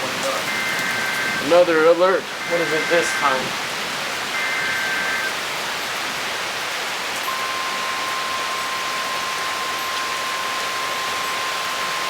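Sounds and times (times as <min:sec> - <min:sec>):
heavy rain pouring: 0:00.0 - 0:12.0
steady high tone: 0:00.4 - 0:03.6, 0:04.3 - 0:05.4, 0:07.3 - 0:12.0.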